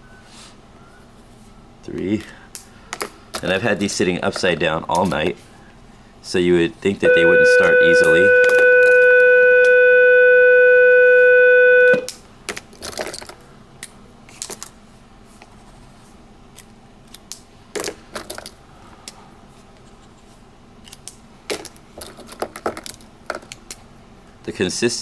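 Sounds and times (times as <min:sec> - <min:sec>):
loud steady pitched tone: 0:07.0 - 0:12.1.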